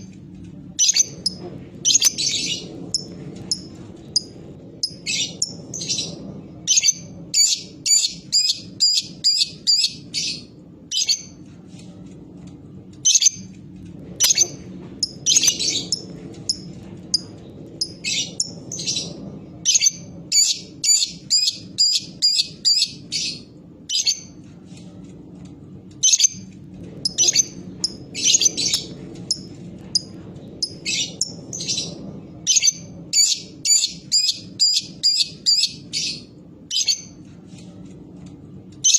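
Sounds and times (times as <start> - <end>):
lovebird chirping calls: 0.8 - 6.1, 6.7 - 11.3, 14.2 - 17.2, 17.8 - 24.3, 27.0 - 29.4, 32.5 - 37.1.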